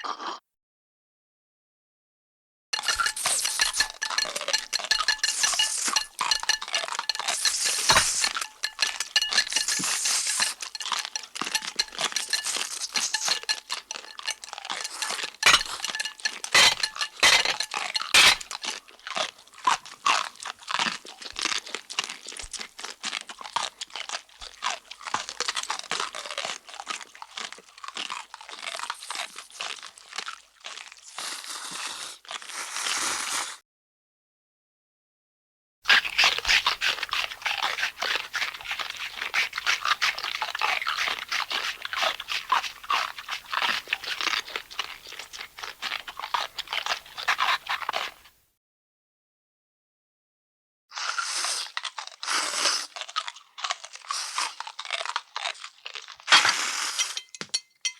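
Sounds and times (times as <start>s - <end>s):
dishes clinking: 2.8s - 18.7s, 56.4s - 57.9s
cartoon crunching and chewing: 2.8s - 33.4s, 35.9s - 48.4s, 51.0s - 57.2s.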